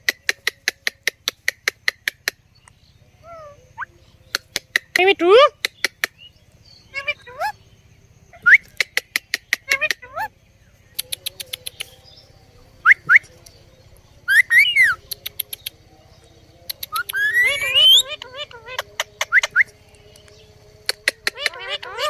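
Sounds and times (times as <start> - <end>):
sharp clicks: 4.3 - 6.1, 10.9 - 12.0, 15.0 - 15.8, 16.7 - 17.3, 19.1 - 21.6
parrot whistling and chirping: 14.3 - 15.0, 16.8 - 19.7.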